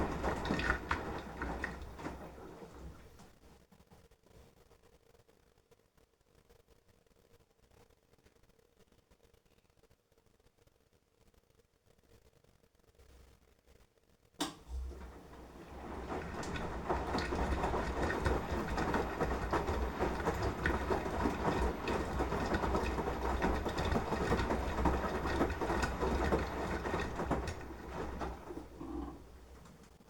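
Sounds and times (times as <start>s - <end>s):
laundry and water sloshing: 0.0s - 3.3s, 14.6s - 30.0s
washing machine drum turning: 0.0s - 3.3s, 14.4s - 30.0s
washing machine click: 14.4s - 30.0s.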